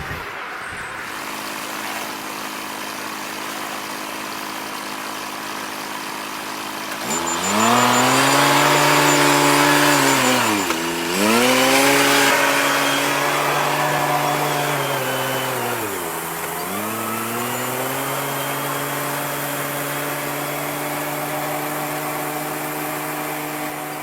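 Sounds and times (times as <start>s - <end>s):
farm machinery engine revving: 1.0s - 24.0s.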